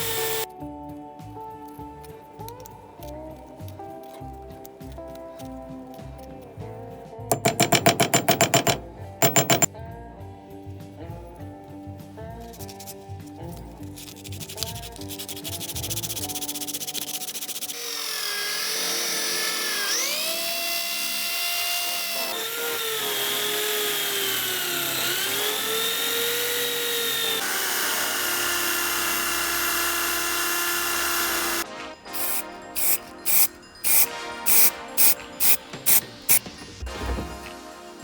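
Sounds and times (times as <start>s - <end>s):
electric power tool whining: 0.0s - 0.5s, 17.3s - 36.4s.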